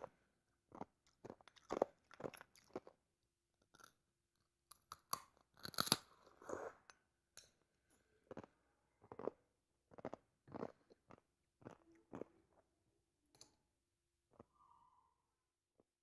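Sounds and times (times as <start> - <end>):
ice being chewed crunching: 0.7 - 3.0, 4.7 - 6.8, 8.3 - 12.3.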